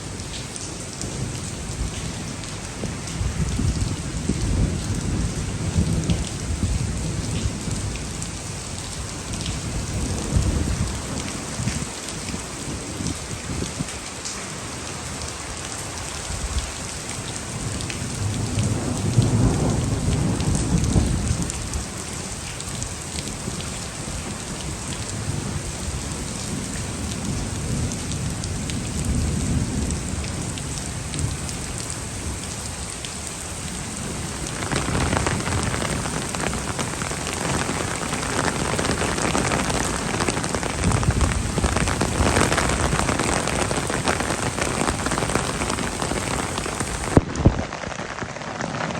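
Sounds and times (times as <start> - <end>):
heavy rain pouring: 0.0 - 48.9
rolling thunder: 34.0 - 48.9.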